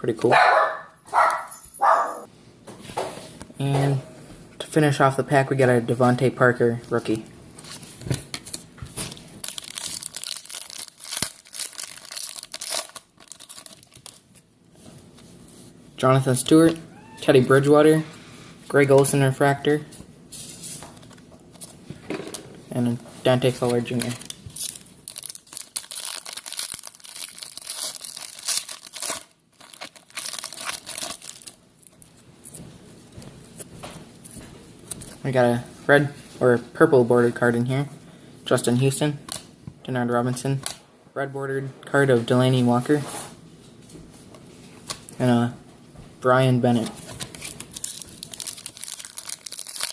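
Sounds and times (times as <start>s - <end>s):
foil wrapper crinkling and tearing: 9.4s - 14.3s, 23.5s - 32.1s, 46.9s - 49.9s.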